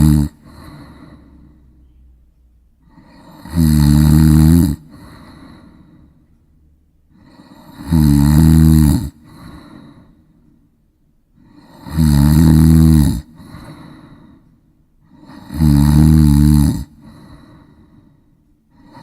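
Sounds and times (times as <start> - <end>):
child snoring: 0.0 - 1.7, 2.8 - 5.9, 7.1 - 10.1, 11.4 - 14.2, 15.1 - 17.8, 18.7 - 19.0
quiet breathing: 0.0 - 8.0, 8.6 - 12.0, 13.2 - 19.0.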